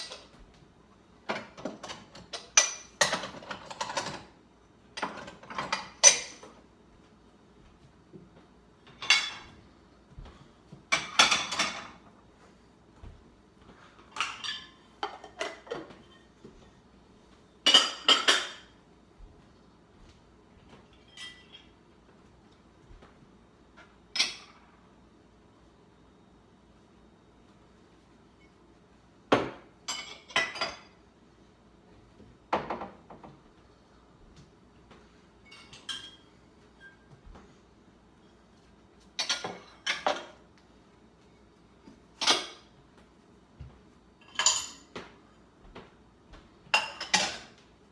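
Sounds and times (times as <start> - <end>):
dishes and cutlery clattering: 0.0 - 0.4, 1.2 - 6.6, 8.8 - 9.6, 10.9 - 12.1, 14.0 - 16.6, 17.6 - 18.8, 20.8 - 21.8, 24.1 - 24.6, 29.3 - 31.0, 35.4 - 37.1, 39.1 - 40.4, 42.1 - 42.8, 44.2 - 45.2, 46.7 - 47.7.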